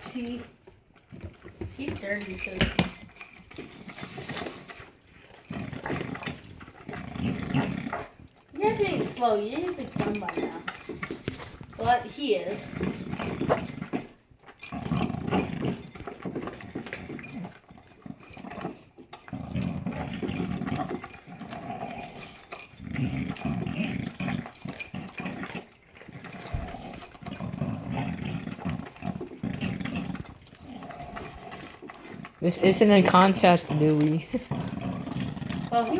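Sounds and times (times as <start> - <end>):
dogs chewing and licking: 0.0 - 35.9.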